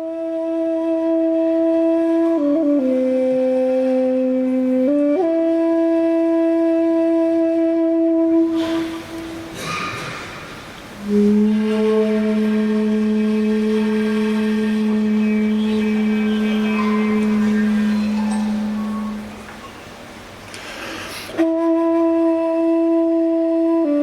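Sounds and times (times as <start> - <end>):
long held wind instrument notes: 0.0 - 20.3, 21.3 - 24.0
brief rushing noise: 8.5 - 11.0.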